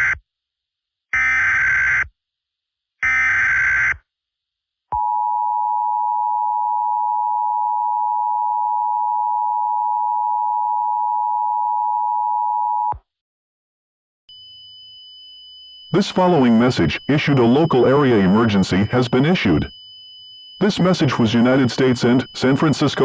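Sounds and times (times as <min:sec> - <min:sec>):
digital header data bursts: 0:15.6 - 0:19.8, 0:20.4 - 0:23.0
two-tone attention signal: 0:15.8 - 0:19.8, 0:20.6 - 0:23.0.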